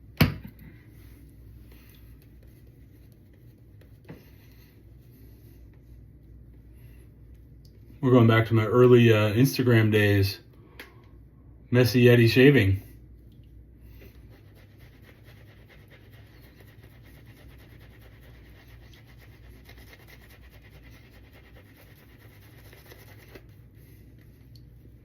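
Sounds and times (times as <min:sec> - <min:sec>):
shaving brush swishing lather: 0:14.1 - 0:24.4.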